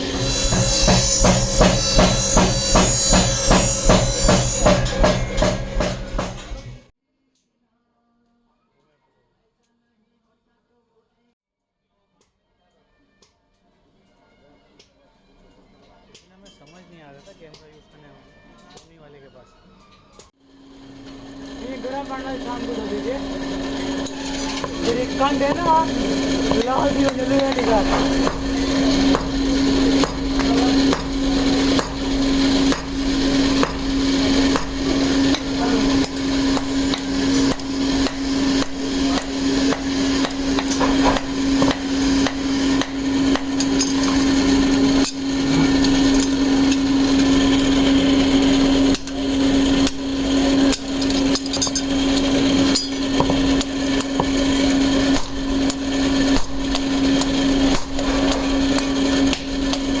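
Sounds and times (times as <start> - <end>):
hammer striking steel on anvil: 0.0 - 6.9, 21.4 - 60.0
steady low hum: 20.7 - 60.0.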